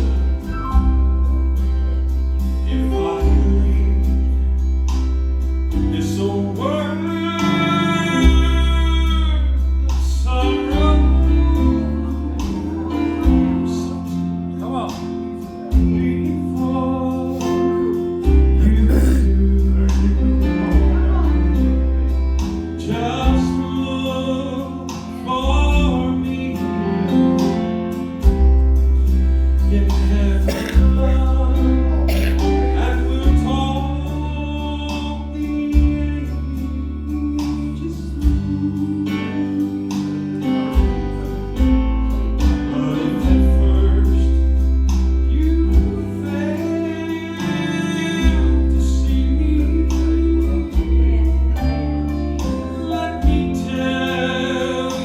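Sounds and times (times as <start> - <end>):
steady bass line: 0.0 - 46.9
guitar: 0.0 - 55.0
male and female voices singing: 16.9 - 21.8, 29.7 - 40.1.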